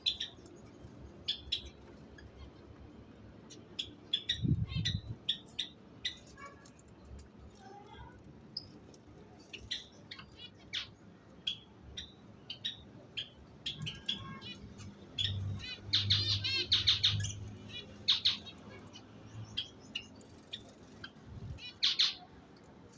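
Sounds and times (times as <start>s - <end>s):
budgerigars chirping: 0.0s - 0.4s, 9.6s - 22.3s.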